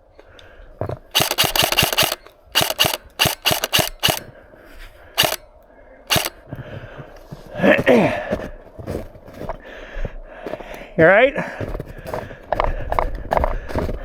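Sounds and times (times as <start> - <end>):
airsoft gun firing: 1.1 - 4.2, 5.2 - 5.4, 6.1 - 6.4.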